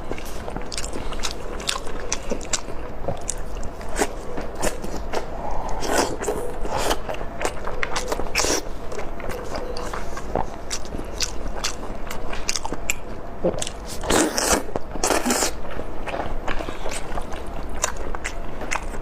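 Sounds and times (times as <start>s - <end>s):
biting and chewing: 0.0s - 19.0s.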